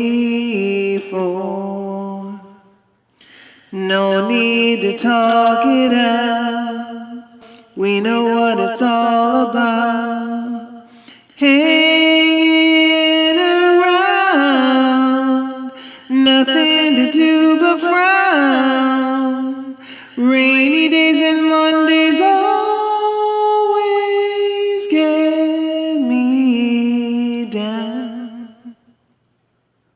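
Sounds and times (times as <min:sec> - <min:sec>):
woman singing a cappella: 0:00.0 - 0:02.7, 0:03.8 - 0:28.9
short breaths: 0:03.1 - 0:03.8, 0:10.9 - 0:11.4, 0:15.8 - 0:16.1, 0:19.8 - 0:20.2.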